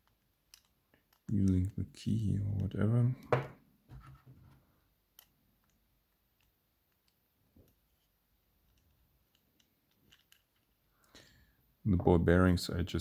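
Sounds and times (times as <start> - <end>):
faint metallic padlock clicks: 8.7 - 11.2.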